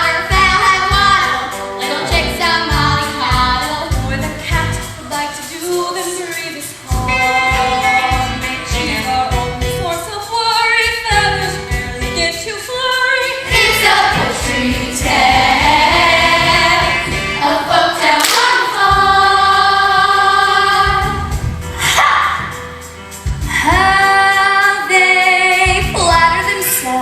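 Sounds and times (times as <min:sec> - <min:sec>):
youth ensemble singing: 0:00.0 - 0:09.7, 0:13.2 - 0:22.8
musical accompaniment: 0:00.0 - 0:27.0.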